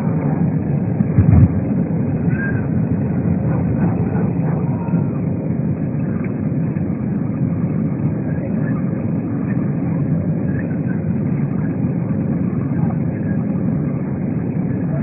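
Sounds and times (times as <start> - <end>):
rushing airflow: 0.0 - 4.9
airplane engines droning: 0.0 - 15.0.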